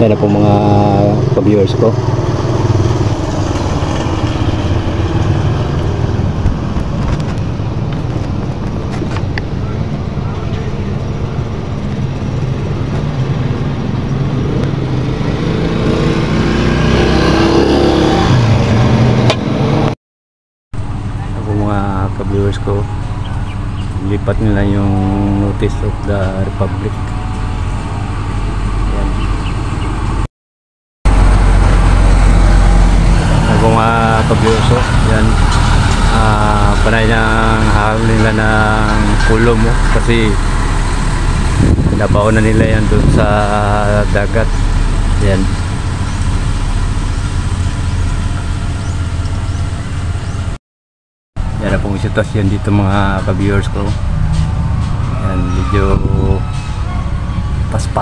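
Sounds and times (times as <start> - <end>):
vehicle engine running: 0.0 - 19.9, 31.1 - 50.6, 51.4 - 58.0
road traffic noise: 0.0 - 20.0, 20.8 - 30.3, 31.1 - 50.6, 51.4 - 58.0.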